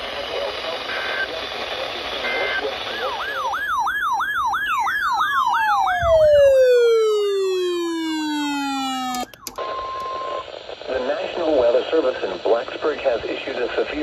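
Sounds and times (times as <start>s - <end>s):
electronic siren wailing: 3.0s - 10.4s
tone gliding downward: 4.9s - 9.5s.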